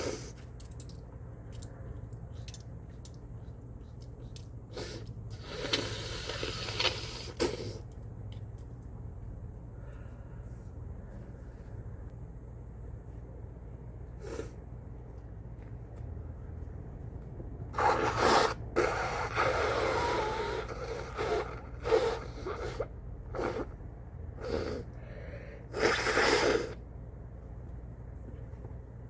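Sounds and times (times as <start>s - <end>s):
gasping breaths: 24.4s - 25.7s.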